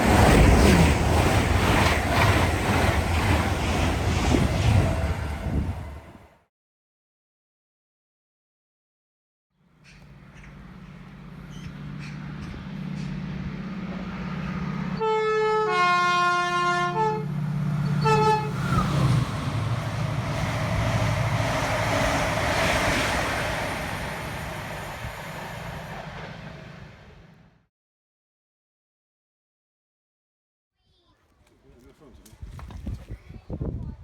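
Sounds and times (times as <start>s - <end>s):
train engine hum: 0.0s - 6.4s, 9.7s - 27.6s
wheel and rail noise: 0.0s - 6.4s, 9.8s - 15.0s, 17.2s - 27.4s
two-tone train horn: 15.0s - 18.8s.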